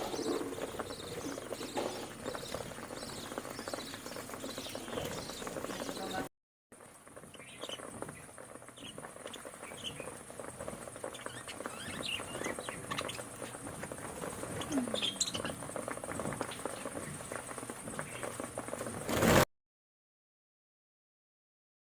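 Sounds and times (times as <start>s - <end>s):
birds pecking grain: 0.0s - 19.4s
faint bird chirps: 14.5s - 15.6s.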